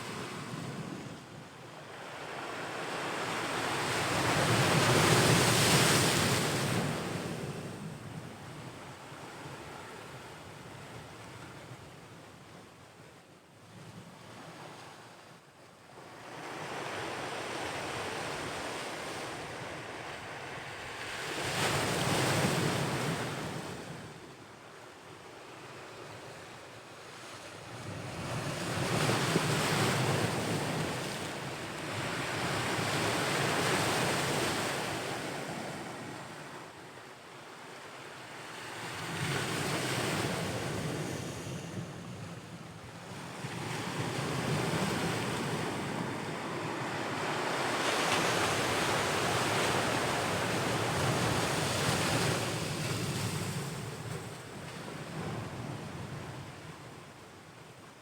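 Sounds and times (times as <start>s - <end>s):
ocean waves breaking on shore: 43.1s - 55.7s.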